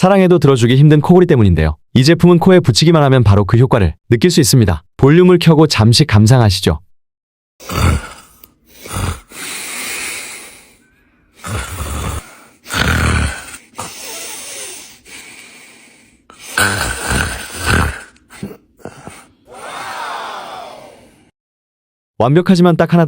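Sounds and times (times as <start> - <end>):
person snoring: 7.6 - 21.3.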